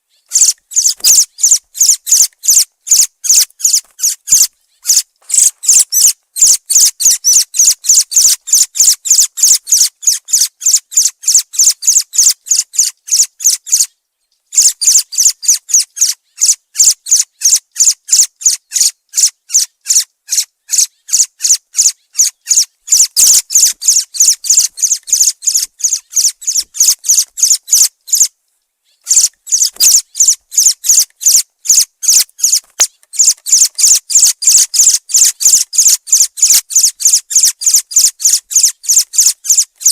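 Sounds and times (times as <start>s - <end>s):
thrush chirping: 0.2s - 13.2s, 21.1s - 28.3s, 29.0s - 39.9s.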